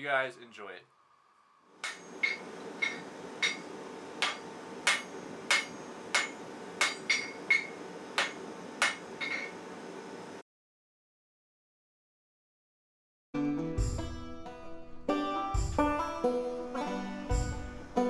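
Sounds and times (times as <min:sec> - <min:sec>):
hammer striking steel on anvil: 0:01.8 - 0:09.6.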